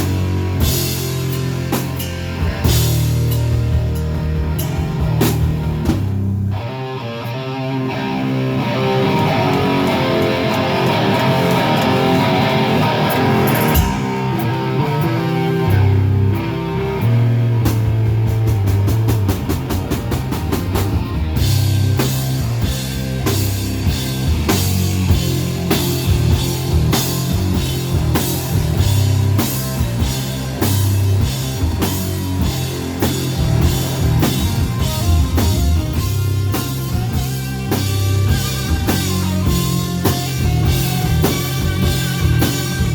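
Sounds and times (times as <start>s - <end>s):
drums and cymbals: 0.0s - 6.6s, 8.9s - 42.9s
bass guitar: 0.0s - 42.9s
distorted guitar riffing: 0.0s - 42.9s.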